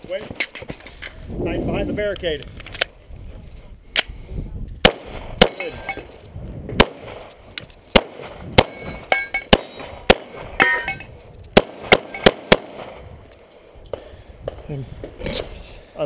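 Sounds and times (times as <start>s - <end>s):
pistol shots: 4.8s - 6.0s, 6.8s - 7.3s, 7.9s - 10.9s, 11.5s - 13.0s.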